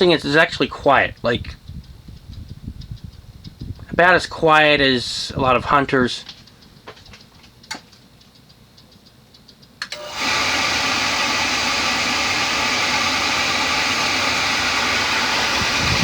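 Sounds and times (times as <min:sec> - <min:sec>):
furnace blower air rushing: 0:09.9 - 0:16.0.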